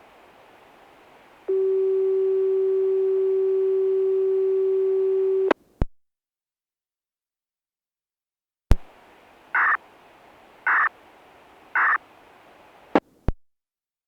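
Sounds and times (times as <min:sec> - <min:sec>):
faint hiss: 0:00.0 - 0:03.3, 0:08.8 - 0:13.3.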